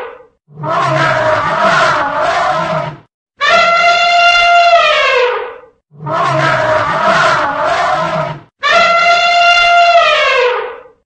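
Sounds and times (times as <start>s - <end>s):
elephant trumpeting: 0.5s - 10.8s.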